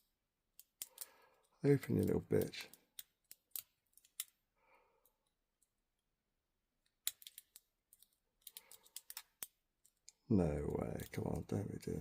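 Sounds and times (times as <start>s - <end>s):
lock pick clicking in padlock: 6.8s - 10.2s.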